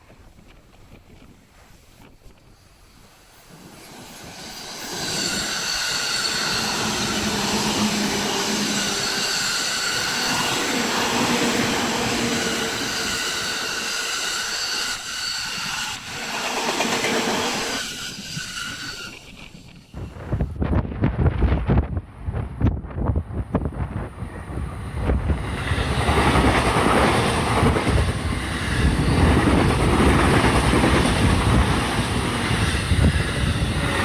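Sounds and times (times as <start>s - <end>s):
train passing on track: 0.0s - 34.0s
wind buffeting microphone: 17.9s - 34.0s.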